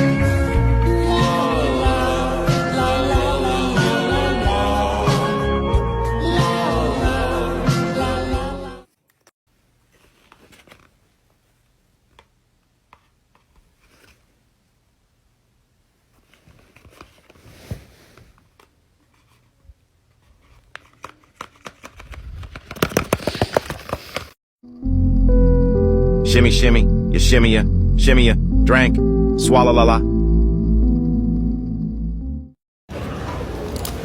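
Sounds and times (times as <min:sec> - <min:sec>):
paper rustling and crinkling: 0:09.8 - 0:11.4, 0:13.4 - 0:14.3, 0:16.1 - 0:19.5, 0:20.1 - 0:24.4.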